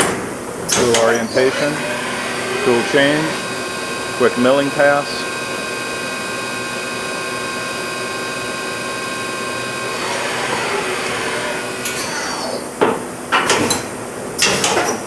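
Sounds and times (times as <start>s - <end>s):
high-pitched spindle whine: 1.1s - 5.4s.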